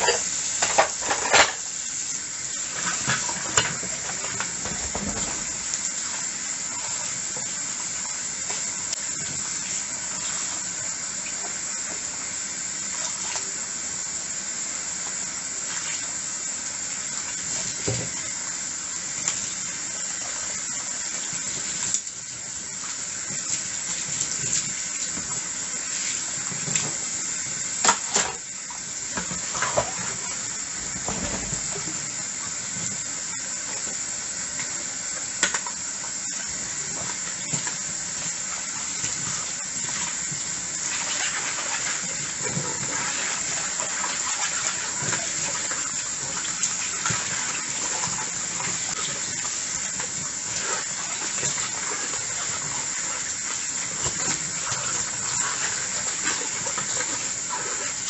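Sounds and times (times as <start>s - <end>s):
tap running into a sink: 2.7s - 6.1s, 17.7s - 18.4s, 30.8s - 33.1s.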